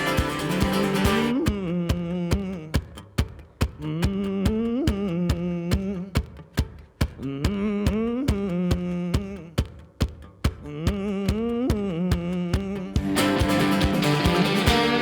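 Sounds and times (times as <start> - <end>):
lead melody with bending notes: 0.0 - 1.4, 13.1 - 15.0
percussive beat: 0.0 - 15.0.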